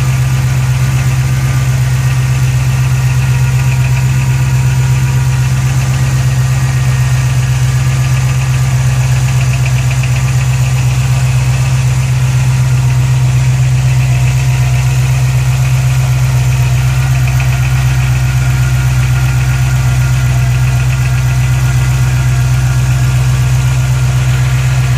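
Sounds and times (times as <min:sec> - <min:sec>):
car engine idling: 0:00.0 - 0:24.9.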